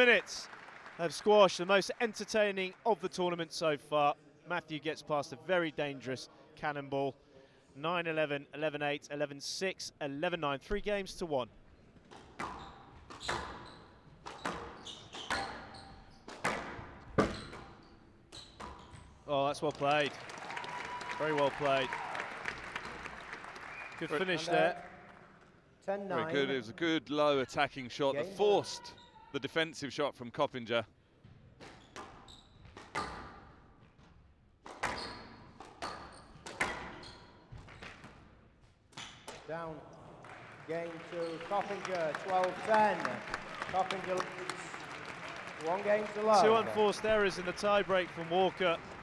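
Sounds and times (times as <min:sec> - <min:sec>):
shoe squeaks: 0:11.7 - 0:16.3, 0:17.2 - 0:19.2, 0:31.7 - 0:33.5, 0:34.8 - 0:37.6
squash ball hits: 0:14.2 - 0:15.7, 0:16.3 - 0:17.7, 0:34.6 - 0:35.0, 0:35.6 - 0:37.0
squash ball hits echoing: 0:16.3 - 0:17.8, 0:34.6 - 0:35.0.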